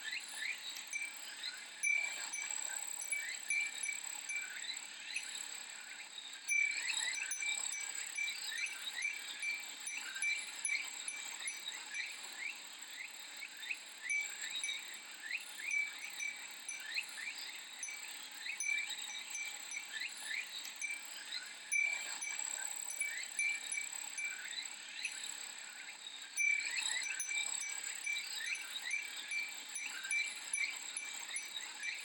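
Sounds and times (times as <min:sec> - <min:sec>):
cicadas chorus: 0:00.1 - 0:32.0
wind chime tinkling: 0:00.4 - 0:05.4, 0:06.5 - 0:12.5, 0:14.0 - 0:25.4, 0:26.4 - 0:32.0.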